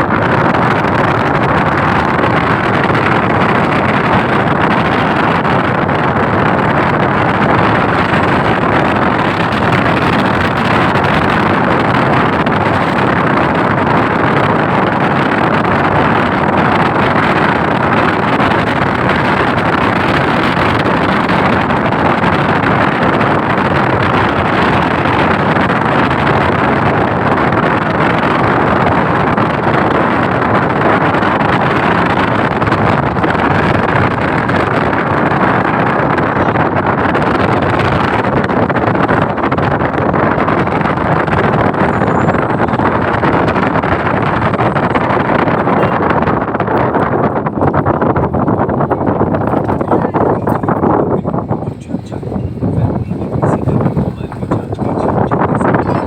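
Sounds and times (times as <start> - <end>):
loud steady rushing noise: 0.0 - 56.0.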